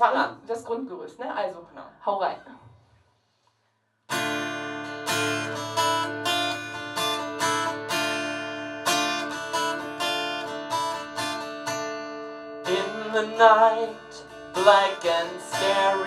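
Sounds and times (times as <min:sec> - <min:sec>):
acoustic guitar strumming chords: 0:04.1 - 0:16.0.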